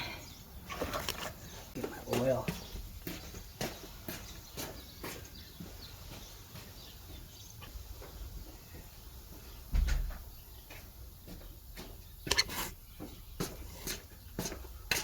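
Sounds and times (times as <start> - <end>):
items knocking and clicking: 12.2 - 12.7.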